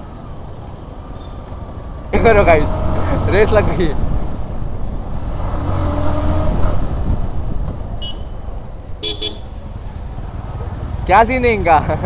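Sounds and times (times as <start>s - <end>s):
motorcycle engine and road rumble: 0.0s - 12.0s
wind rushing over microphone: 2.1s - 9.0s.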